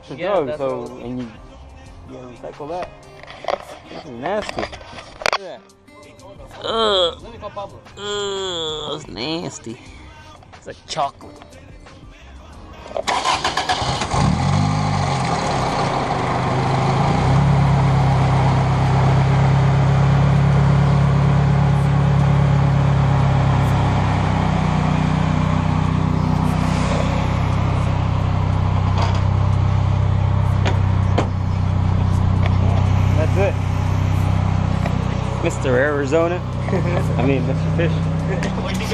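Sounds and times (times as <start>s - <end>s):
car engine idling: 13.0s - 38.9s.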